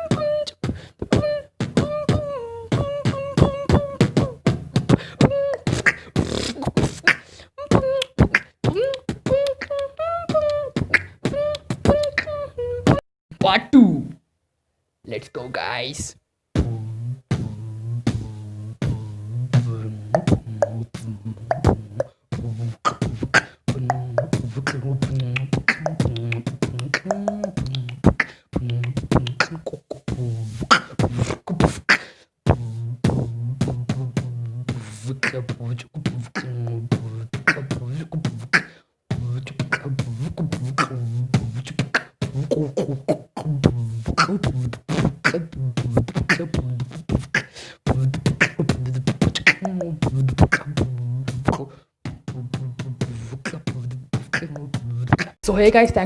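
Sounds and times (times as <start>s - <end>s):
beatboxing: 0.0s - 14.2s, 16.6s - 56.0s.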